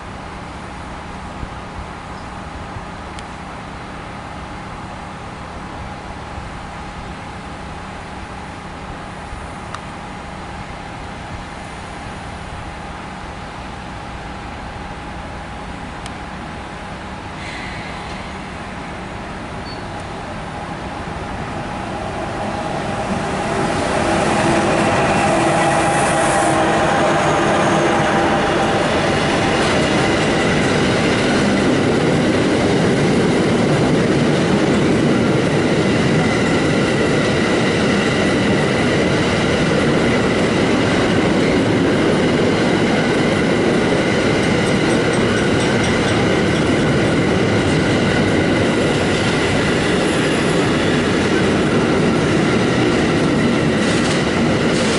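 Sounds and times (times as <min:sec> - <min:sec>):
train wheels on rails: 0:00.3 - 0:54.9.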